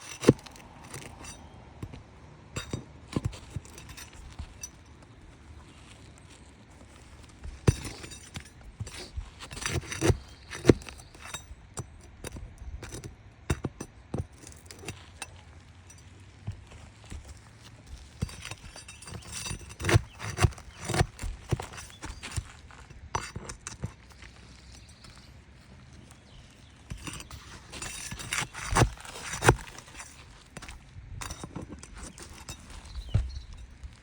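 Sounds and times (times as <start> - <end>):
metal tool clinking on shingles: 0.0 - 34.0.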